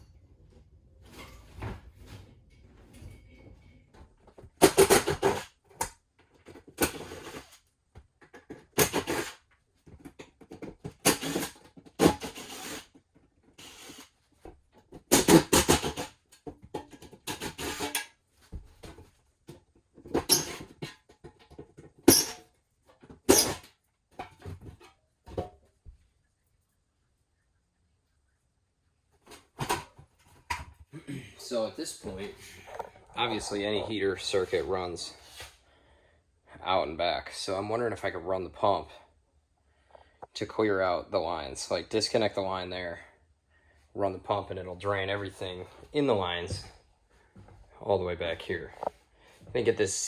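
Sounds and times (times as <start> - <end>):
metal squeaking and rattling: 20.1 - 20.9, 21.9 - 22.4.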